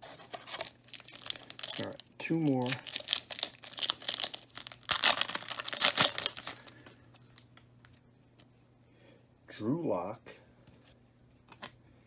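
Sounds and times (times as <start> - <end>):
wrapper tearing and crinkling: 0.3 - 6.7.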